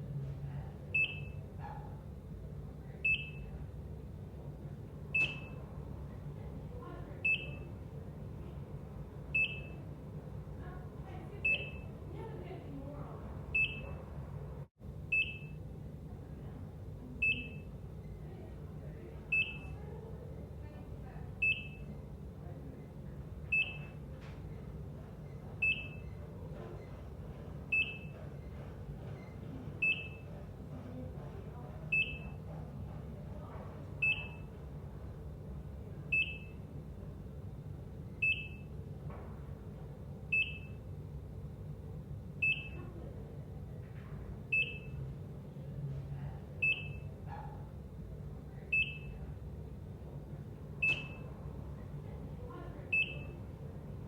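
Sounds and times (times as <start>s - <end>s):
heart monitor beeping: 0.9s - 1.5s, 3.0s - 3.5s, 5.1s - 5.6s, 7.2s - 7.8s, 9.3s - 9.9s, 11.4s - 12.0s, 13.5s - 14.0s, 15.1s - 15.6s, 17.2s - 17.8s, 19.3s - 19.8s, 21.4s - 22.0s, 23.4s - 30.4s, 31.9s - 33.0s, 34.0s - 34.6s, 36.1s - 36.7s, 38.1s - 38.8s, 40.3s - 40.9s, 42.4s - 42.8s, 44.5s - 45.0s, 46.6s - 47.6s, 48.7s - 49.2s, 50.8s - 51.4s, 52.9s - 53.5s.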